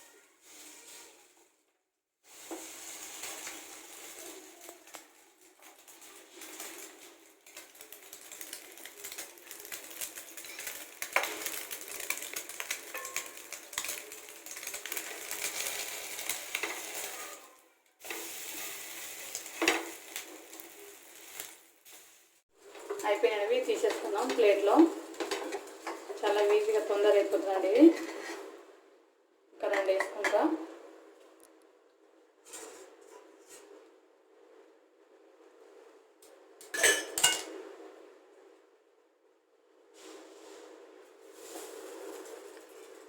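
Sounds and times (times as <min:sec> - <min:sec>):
bread sizzling in a pan: 0:02.2 - 0:28.4, 0:39.9 - 0:43.0
spatula clicking and scraping pan: 0:04.8 - 0:17.1, 0:23.8 - 0:26.8.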